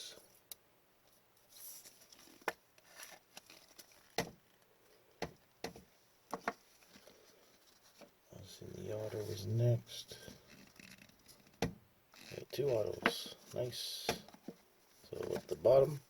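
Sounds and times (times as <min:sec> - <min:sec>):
soft card rustles: 0:01.4 - 0:04.7, 0:12.2 - 0:15.8.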